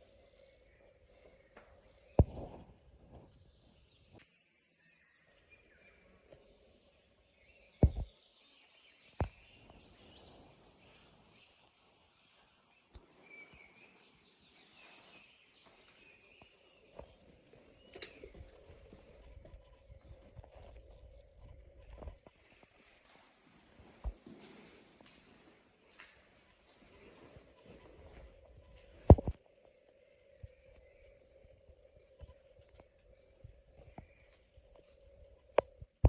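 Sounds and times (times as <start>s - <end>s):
faint bird chirps: 25.4s - 36.0s.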